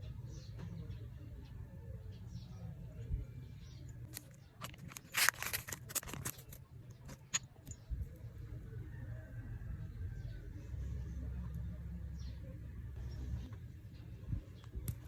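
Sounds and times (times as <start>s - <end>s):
low steady hum: 0.0s - 15.0s
plastic packaging crackling: 4.1s - 6.6s.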